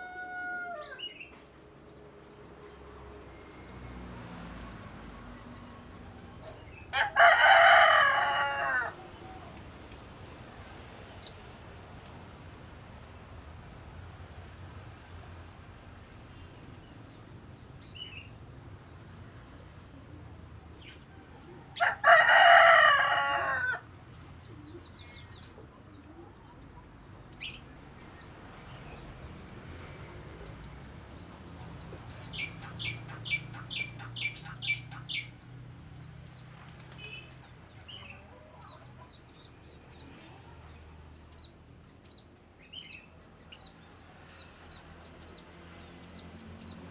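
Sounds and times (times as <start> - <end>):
rooster crowing: 0.0 - 1.1, 6.9 - 9.2, 21.6 - 23.9
small bird chirping: 31.7 - 35.4.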